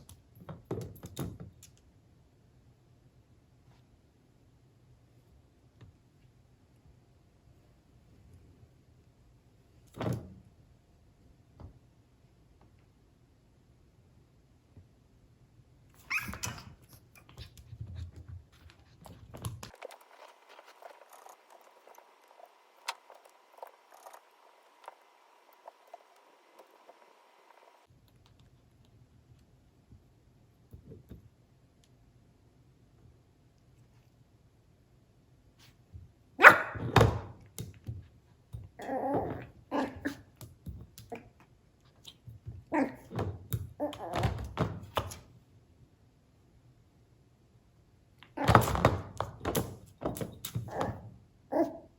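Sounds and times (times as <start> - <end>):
puppy yelping: 16.0 - 17.5, 50.8 - 51.9
puppy barking: 36.4 - 37.0, 51.5 - 51.9.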